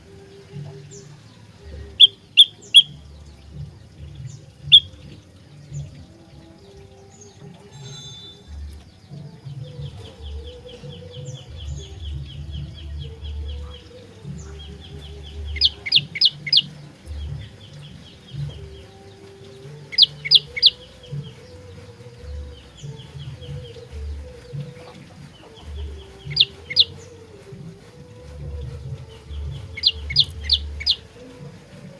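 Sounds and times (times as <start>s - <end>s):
bird singing chattering notes: 0.0s - 31.9s
sharp high bird notes: 7.1s - 27.3s.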